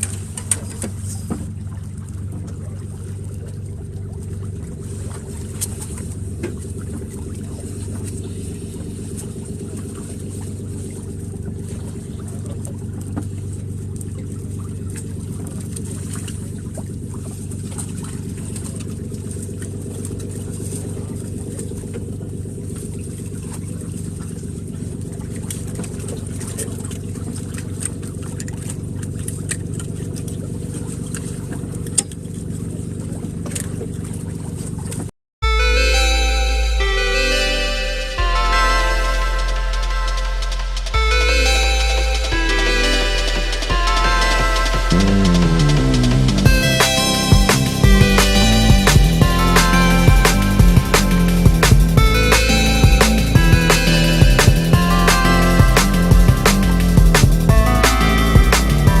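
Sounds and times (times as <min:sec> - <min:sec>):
boat engine humming: 0:00.0 - 0:59.0.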